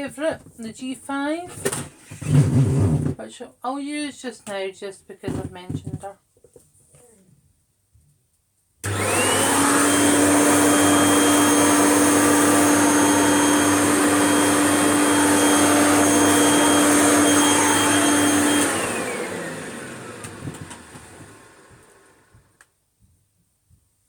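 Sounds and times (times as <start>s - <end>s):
vacuum cleaner motor whine: 8.8s - 22.6s.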